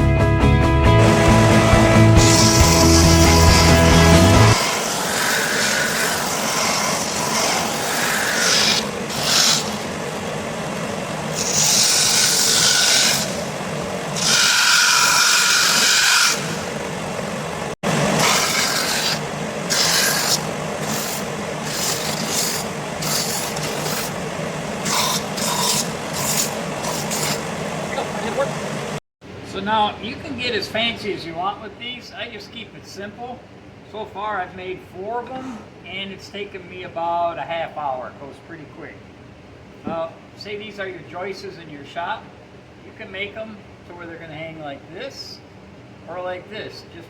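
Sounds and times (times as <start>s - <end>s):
rubbing and scraping on plywood: 18.2s - 24.2s, 24.8s - 27.5s.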